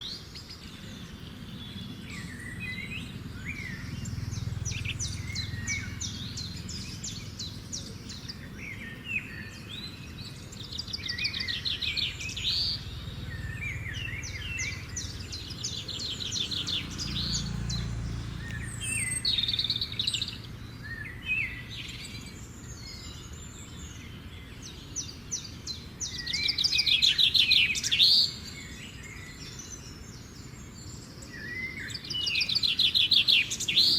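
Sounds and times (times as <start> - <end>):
birds chirping and trilling: 0.0 - 33.9
low background rumble: 0.9 - 23.9.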